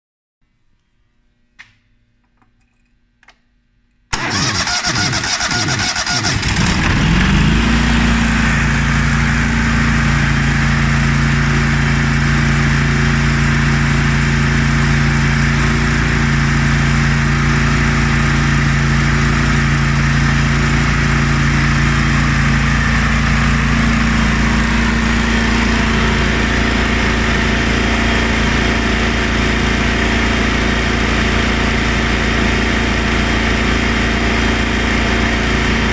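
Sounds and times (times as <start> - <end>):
air compressor engine starting: 4.1 - 35.9.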